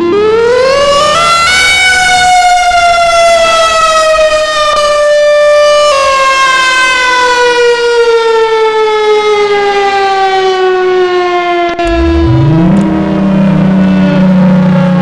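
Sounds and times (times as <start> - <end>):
outdoor warning siren: 0.0 - 15.0.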